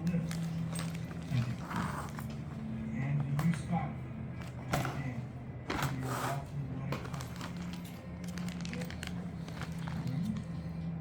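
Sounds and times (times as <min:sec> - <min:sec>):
low background voice or music: 0:00.0 - 0:11.0
plastic bags rustling: 0:07.0 - 0:10.5.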